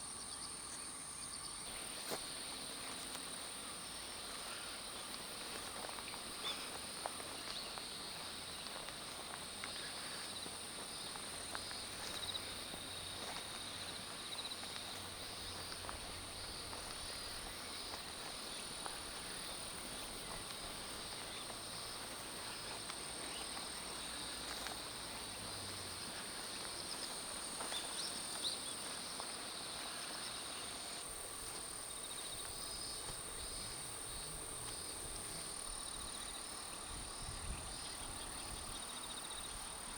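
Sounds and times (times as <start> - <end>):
insects chirring: 0.0 - 39.9.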